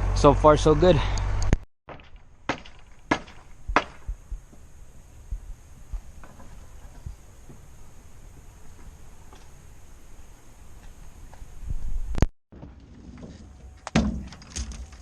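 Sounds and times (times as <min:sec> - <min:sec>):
sharp knocks: 0:01.9 - 0:04.1.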